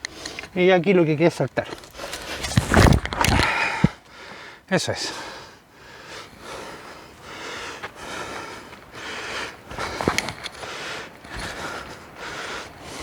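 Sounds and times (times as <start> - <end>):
person breathing hard through nose: 3.3 - 13.0.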